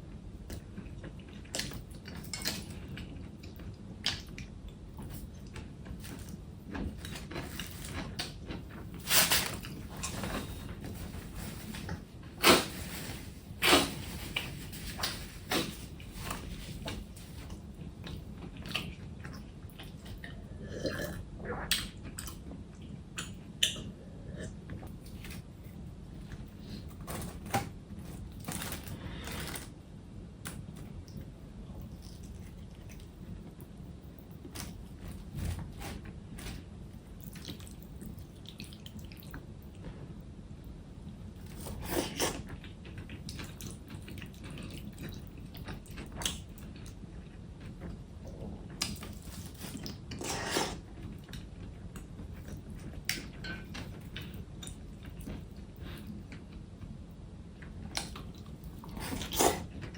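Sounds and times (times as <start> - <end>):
steady low hum: 0.0 - 59.9
wet chewing and slurping: 57.9 - 59.9.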